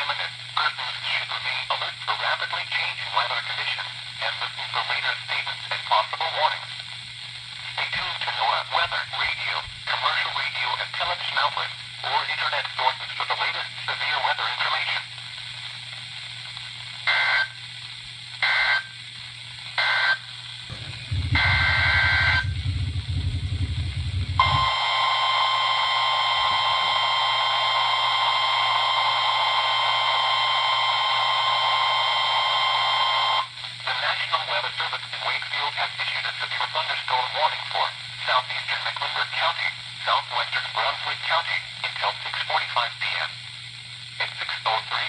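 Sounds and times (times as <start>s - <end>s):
steady warning alarm tone: 19.8s - 33.5s
low buzz: 20.7s - 33.3s.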